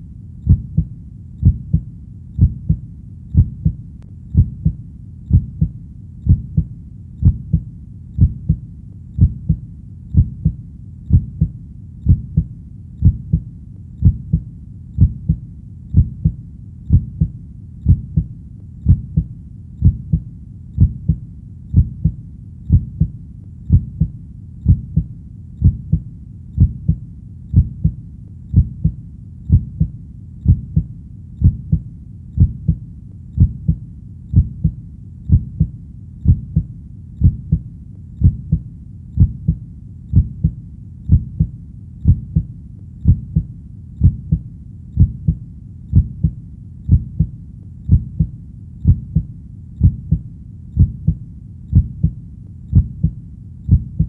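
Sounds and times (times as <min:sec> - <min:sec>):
heartbeat double thump: 0:00.5 - 0:02.8, 0:03.4 - 0:07.6, 0:08.2 - 0:08.6, 0:09.2 - 0:09.6, 0:10.2 - 0:11.5, 0:12.1 - 0:14.4, 0:15.0 - 0:15.4, 0:16.0 - 0:20.2, 0:20.8 - 0:23.1, 0:23.7 - 0:26.0, 0:26.6 - 0:31.8, 0:32.4 - 0:32.8, 0:33.4 - 0:37.6, 0:38.2 - 0:38.6, 0:39.2 - 0:44.4, 0:45.0 - 0:47.3, 0:47.9 - 0:50.2, 0:50.8 - 0:54.0.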